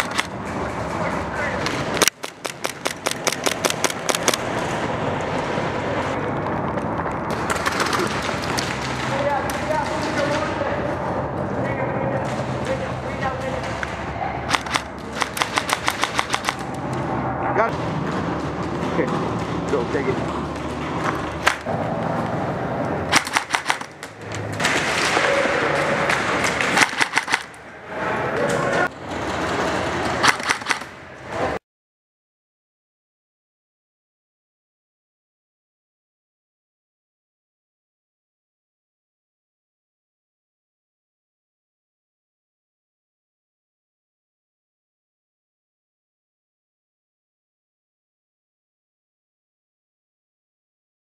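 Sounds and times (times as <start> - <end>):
airsoft gun firing sharp shots: 0.0 - 0.4, 1.9 - 4.5, 14.5 - 16.7, 21.4 - 21.7, 23.1 - 24.2, 26.5 - 27.6, 30.2 - 31.0.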